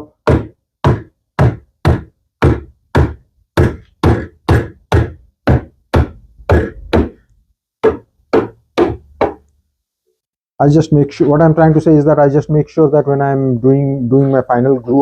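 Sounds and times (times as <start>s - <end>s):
mallet blows on wooden frame: 0.0s - 7.2s.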